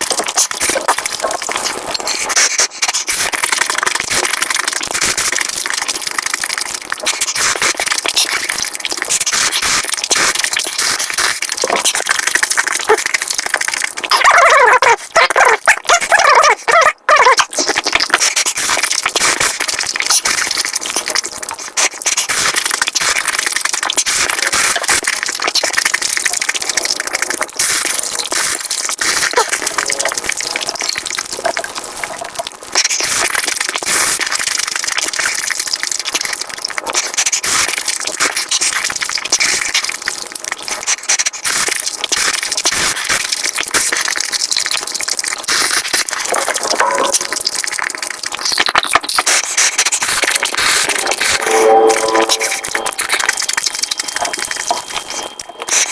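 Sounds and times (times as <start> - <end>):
sped-up chewing and crunching: 0.0 - 51.4, 53.0 - 55.9.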